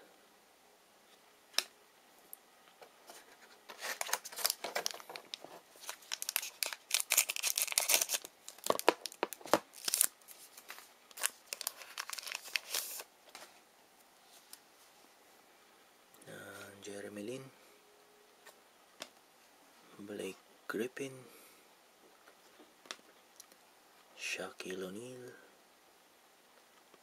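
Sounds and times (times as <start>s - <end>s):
wrapper tearing and crinkling: 3.7s - 13.1s.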